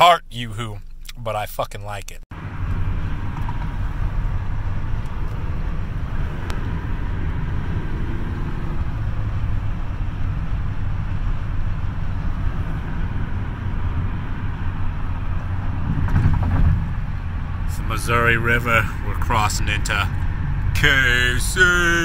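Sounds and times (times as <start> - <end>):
road and tyre rumble: 0.0 - 22.0.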